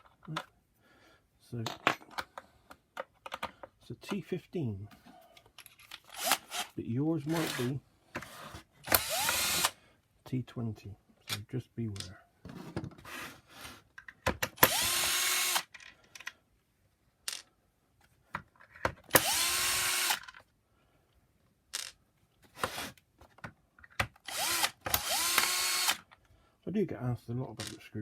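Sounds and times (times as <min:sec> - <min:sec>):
electric screwdriver motor whine: 0:08.9 - 0:09.7, 0:14.6 - 0:15.7, 0:19.2 - 0:20.2, 0:24.3 - 0:26.0.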